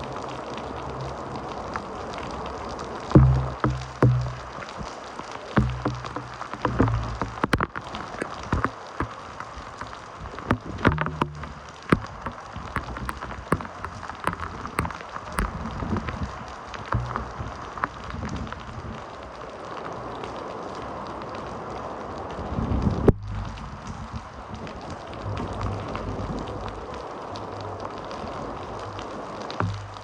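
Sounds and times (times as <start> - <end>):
heavy rain falling: 0.0 - 30.0
raindrops tapping a surface: 0.0 - 30.0.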